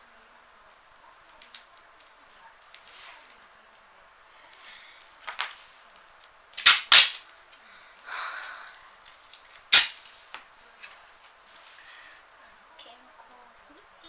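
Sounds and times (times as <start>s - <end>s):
packing tape ripping off roll: 4.6s - 7.4s, 9.2s - 11.0s.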